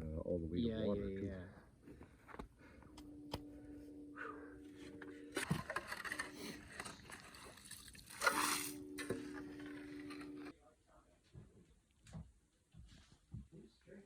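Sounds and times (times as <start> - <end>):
slush scraped and splashed: 5.6 - 10.4.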